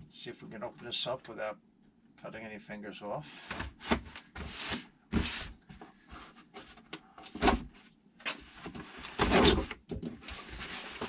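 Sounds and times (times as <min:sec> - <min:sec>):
cardboard box scraping and rustling: 0:03.4 - 0:05.6, 0:07.4 - 0:11.0.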